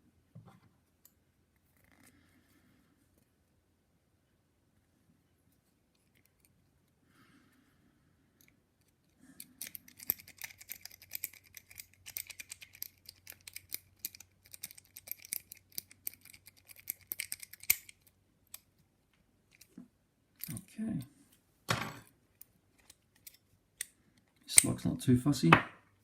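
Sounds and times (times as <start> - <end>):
lock pick clicking in padlock: 9.4 - 18.6.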